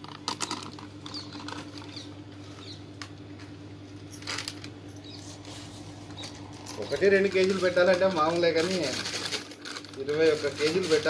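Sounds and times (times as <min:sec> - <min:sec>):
steady low hum: 0:00.0 - 0:10.8
high bird chirps: 0:01.9 - 0:02.9, 0:05.0 - 0:05.4.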